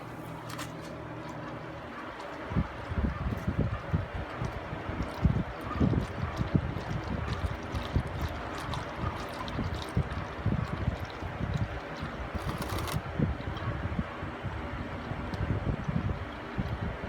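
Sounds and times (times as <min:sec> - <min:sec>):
oil draining into a pan: 0:02.2 - 0:12.5.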